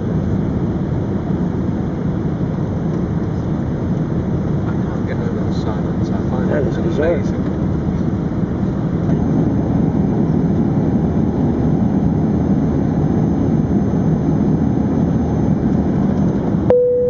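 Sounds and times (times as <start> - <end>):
airplane cabin engine hum: 0.0 - 17.0
steady tone: 16.6 - 17.0.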